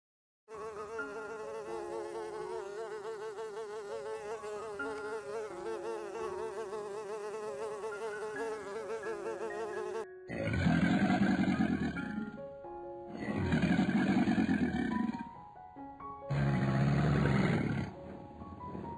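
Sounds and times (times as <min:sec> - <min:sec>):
bee buzzing: 0:00.5 - 0:10.1.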